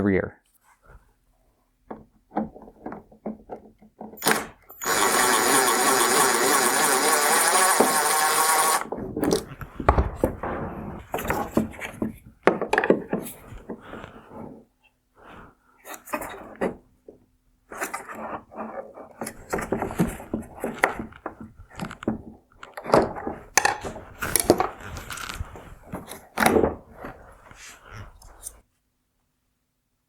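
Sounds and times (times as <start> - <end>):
plastic clicks knocks and scraping: 1.8 - 14.6, 15.8 - 28.6.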